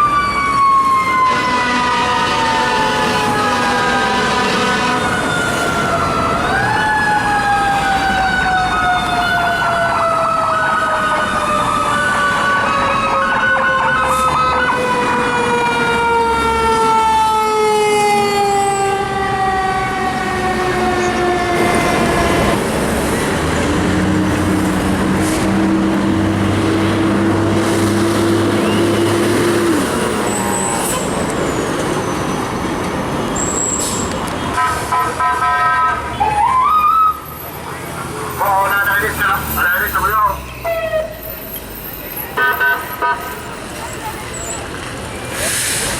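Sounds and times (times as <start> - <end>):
fire engine siren wailing: 0.0 - 45.9
truck rumble: 0.0 - 45.9.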